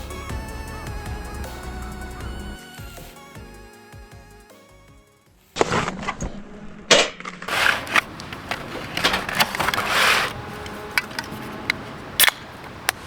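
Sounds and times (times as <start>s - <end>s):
objects handled by hand: 7.2s - 13.0s.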